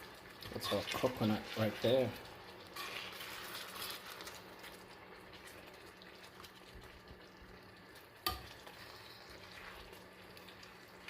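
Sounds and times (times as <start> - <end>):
chicken sizzling in a pan: 0.0 - 11.0.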